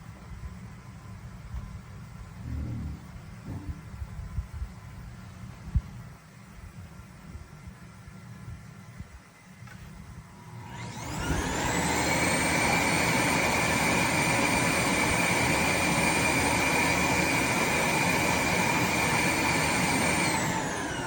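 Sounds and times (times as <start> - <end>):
vacuum suction motor whining: 2.1 - 4.4, 10.3 - 21.0.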